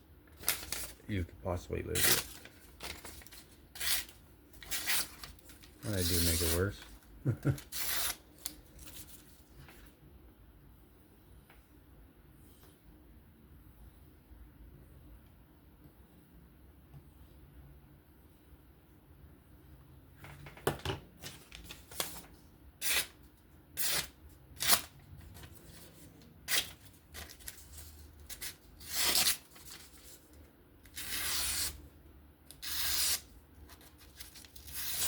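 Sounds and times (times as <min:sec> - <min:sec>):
knife slicing paper: 0:01.9 - 0:06.8, 0:07.7 - 0:08.2, 0:21.9 - 0:23.2, 0:23.8 - 0:25.5, 0:26.5 - 0:30.1, 0:31.0 - 0:31.8, 0:32.6 - 0:35.0.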